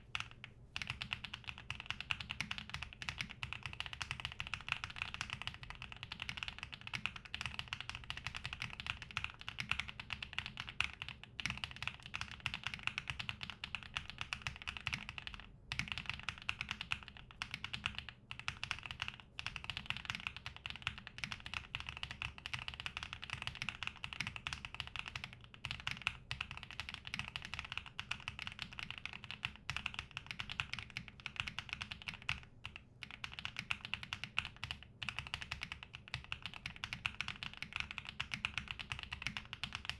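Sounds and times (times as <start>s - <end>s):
mechanical keyboard typing: 0.2s - 39.9s.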